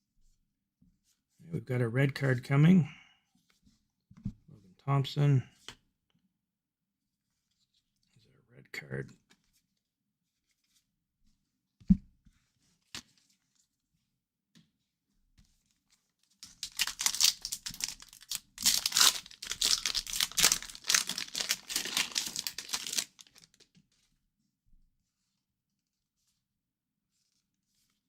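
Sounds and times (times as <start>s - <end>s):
wrapper tearing and crinkling: 16.4s - 23.6s.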